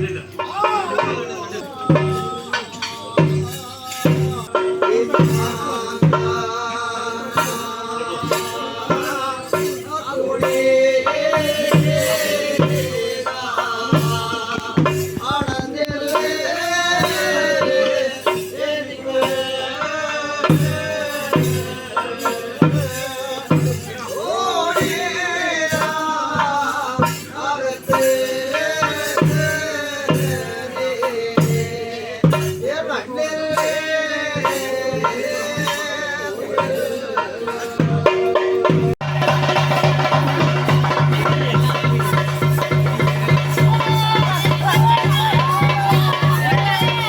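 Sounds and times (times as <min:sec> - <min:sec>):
rattling percussion: 0:00.0 - 0:47.0
steady drum beat: 0:00.0 - 0:47.0
low drum strokes: 0:08.2 - 0:18.6, 0:37.8 - 0:47.0.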